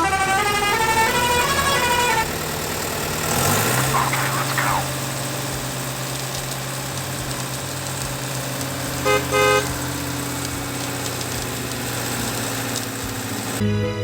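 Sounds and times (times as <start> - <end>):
horn toots: 0.0 - 2.4, 7.2 - 14.0
vehicle engine droning: 0.0 - 14.0.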